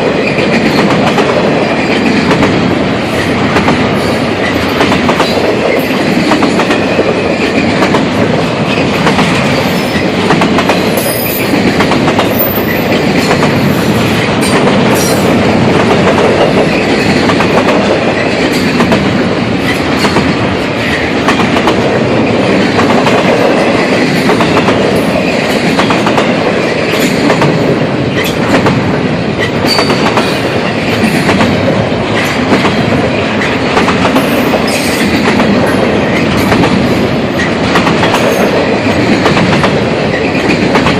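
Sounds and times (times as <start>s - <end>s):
train wheels clattering over rail joints: 0.0s - 40.9s.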